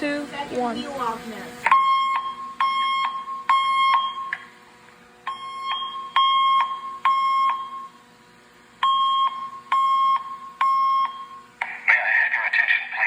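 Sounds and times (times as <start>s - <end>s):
fire alarm beeps: 1.7s - 4.5s, 5.2s - 8.0s, 8.8s - 11.6s.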